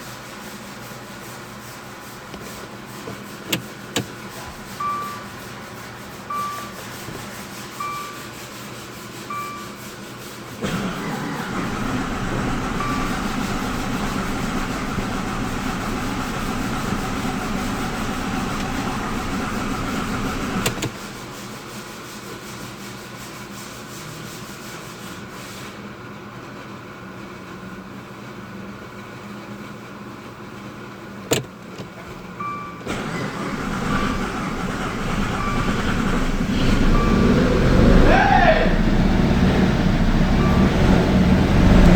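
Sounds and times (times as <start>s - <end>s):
car engine running: 10.6s - 21.0s, 32.9s - 41.9s.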